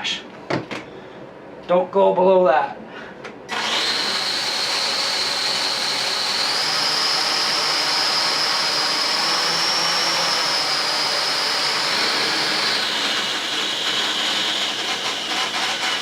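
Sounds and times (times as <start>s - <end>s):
quadcopter motors whining: 3.5s - 16.0s.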